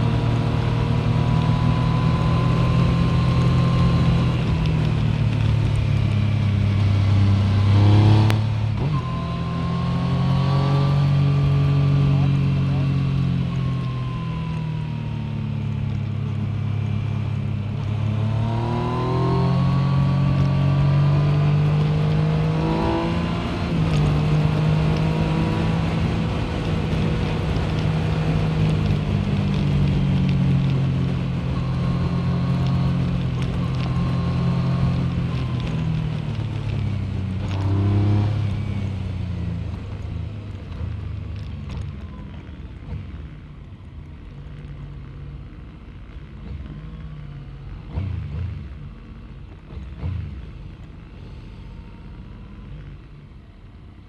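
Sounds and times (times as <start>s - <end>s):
motorcycle engine accelerating: 0.0s - 43.5s
wind noise: 17.8s - 42.2s.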